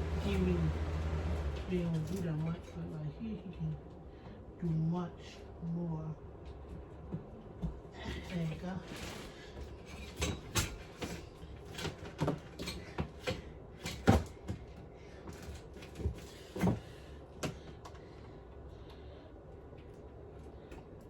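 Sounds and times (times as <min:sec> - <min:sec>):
objects knocking and clunking: 0:10.0 - 0:17.8.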